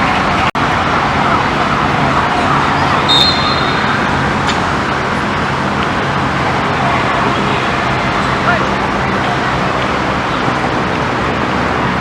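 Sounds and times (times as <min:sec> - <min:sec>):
distant traffic: 0:00.0 - 0:12.0
short high whistle blast: 0:03.0 - 0:04.1.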